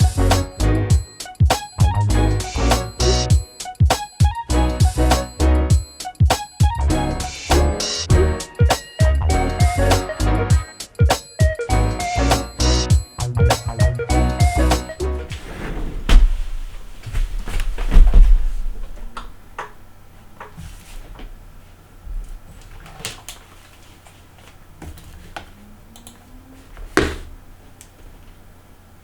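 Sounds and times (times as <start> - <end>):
heavy thumps: 15.0 - 20.5, 26.8 - 27.6.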